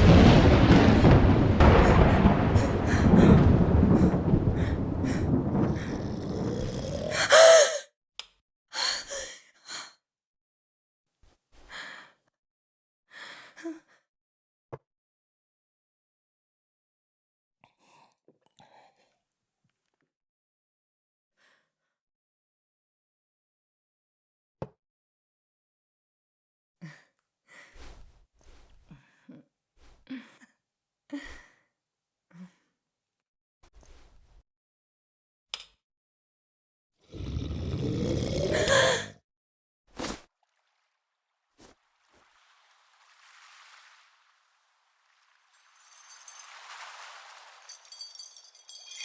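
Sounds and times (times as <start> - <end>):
person sighing and gasping: 1.7 - 7.8, 8.8 - 9.9, 37.1 - 39.2
person breathing heavily: 1.8 - 7.8, 37.2 - 39.1.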